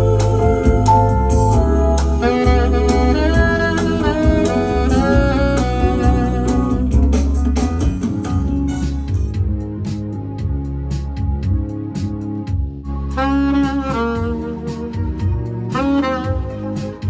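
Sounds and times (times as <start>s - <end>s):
wavering saxophone melody: 0.0s - 9.1s, 12.8s - 17.0s
band music: 0.0s - 17.0s
drum kit steady beat: 0.0s - 17.0s
heavy bass line: 0.0s - 17.0s.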